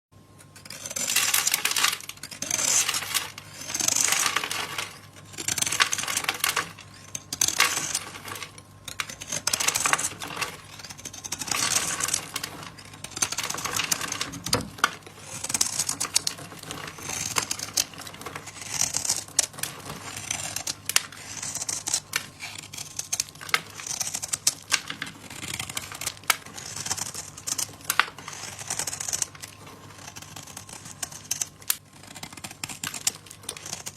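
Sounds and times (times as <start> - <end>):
knife scraping soap: 0.3 - 33.9.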